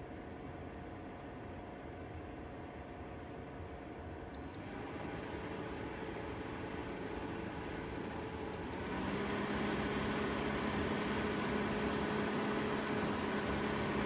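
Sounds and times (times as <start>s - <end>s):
tower fan whirring: 0.0s - 14.0s
short electronic beep: 12.8s - 13.1s.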